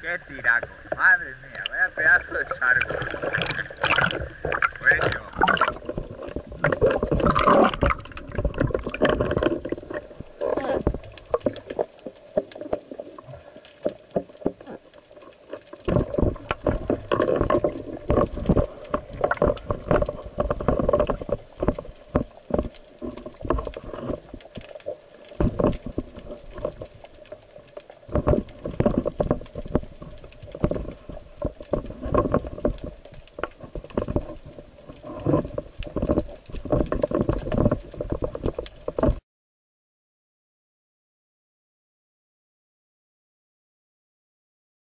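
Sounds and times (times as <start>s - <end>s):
water sloshing and gurgling: 0.0s - 39.2s.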